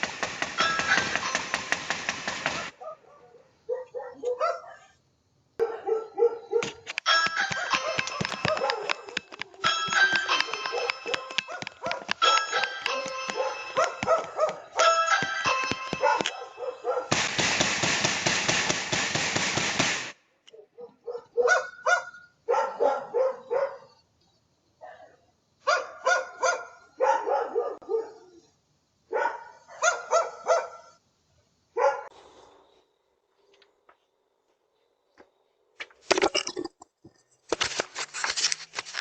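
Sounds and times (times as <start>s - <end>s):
dog barking: 2.6s - 5.0s, 5.6s - 17.2s, 20.5s - 24.1s, 24.8s - 28.4s, 29.1s - 31.0s, 31.7s - 32.2s.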